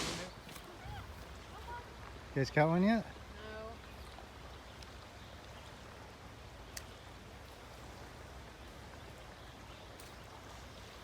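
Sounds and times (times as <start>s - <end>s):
stream water flowing: 0.0s - 11.0s.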